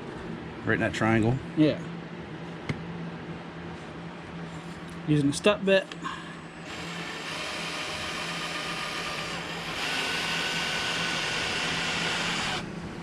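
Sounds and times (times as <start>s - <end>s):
power drill whine: 6.6s - 12.7s.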